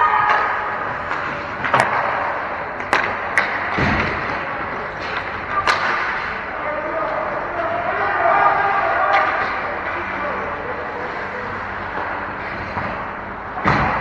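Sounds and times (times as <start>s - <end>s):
hockey sticks striking puck: 0.0s - 14.0s
indoor rink background noise: 0.0s - 14.0s.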